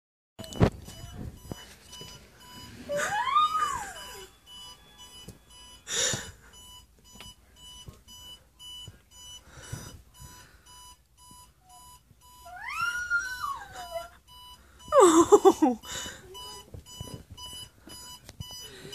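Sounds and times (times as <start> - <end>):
alarm clock beeping: 0.4 - 18.9
dog howling: 12.5 - 14.1.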